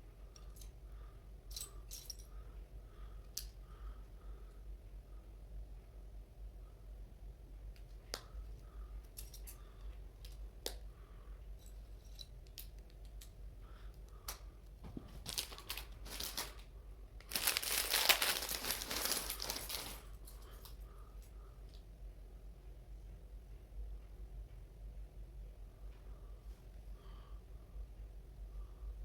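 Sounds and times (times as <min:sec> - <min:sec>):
loud crinkling: 0:15.1 - 0:20.2.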